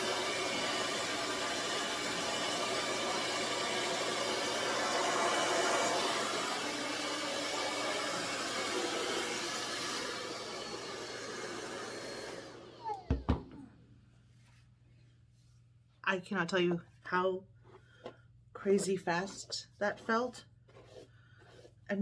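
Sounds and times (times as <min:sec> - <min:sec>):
blow dryer air rushing: 0:00.0 - 0:13.7.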